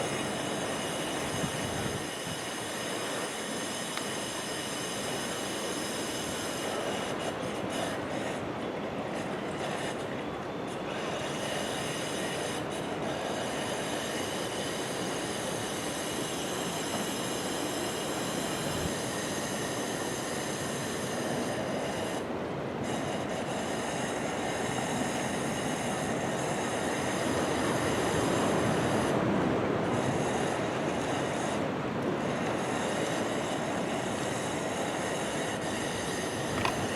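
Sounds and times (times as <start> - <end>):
faint high whining tones: 0.0 - 36.9
waves breaking: 25.0 - 36.9.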